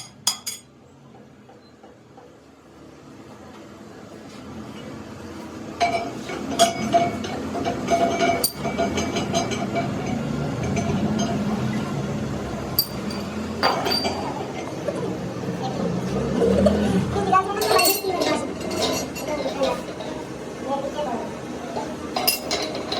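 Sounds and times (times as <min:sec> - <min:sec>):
metal clanking on metal: 0:22.2 - 0:22.9.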